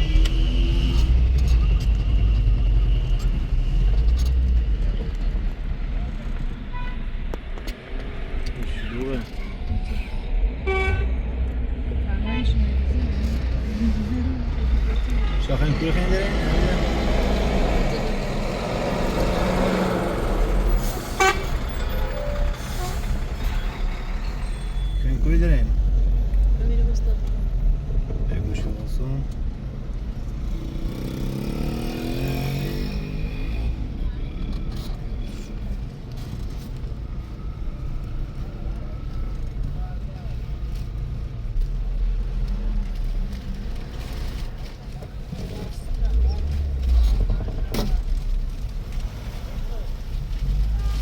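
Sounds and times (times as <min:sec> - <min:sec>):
car engine and road noise: 0:00.0 - 0:51.0
vehicle horn toot: 0:10.6 - 0:11.1, 0:21.1 - 0:23.0.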